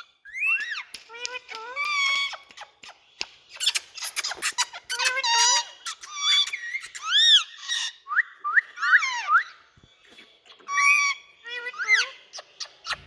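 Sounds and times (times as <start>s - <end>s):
parrot calling and squawking: 3.6s - 8.1s, 8.8s - 9.5s, 10.5s - 13.0s.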